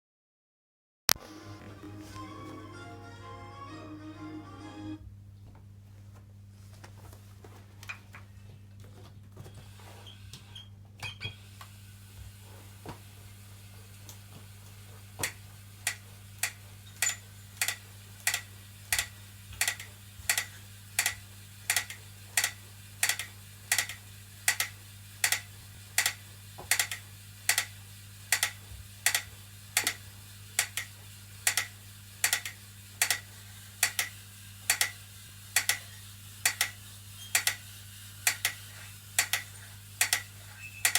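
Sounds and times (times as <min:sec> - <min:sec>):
spin bike pedal clicking: 0:15.2 - 0:40.9.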